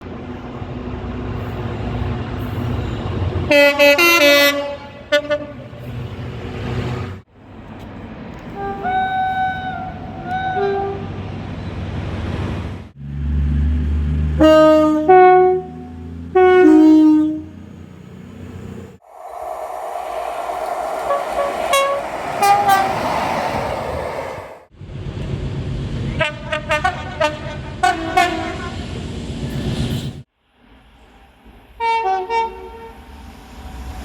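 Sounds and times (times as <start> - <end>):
train rumble: 19.0 - 25.6
train horn blasts: 20.9 - 23.0.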